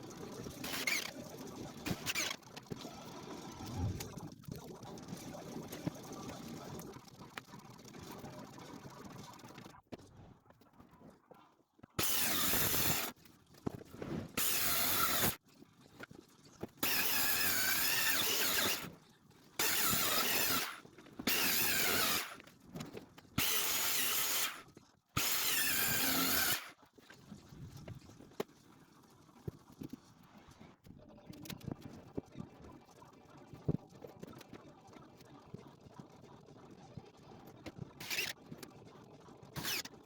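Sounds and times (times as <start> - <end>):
power drill whining: 0.6 - 1.1, 1.9 - 2.4, 12.0 - 13.1, 14.4 - 15.4, 16.8 - 18.9, 19.6 - 22.4, 23.4 - 24.6, 25.2 - 26.7, 39.6 - 39.9.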